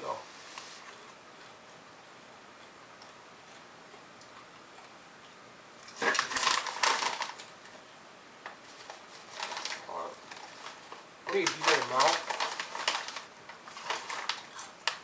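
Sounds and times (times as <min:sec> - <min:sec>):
foil chip bag crinkling: 0:05.8 - 0:07.8, 0:08.7 - 0:15.0.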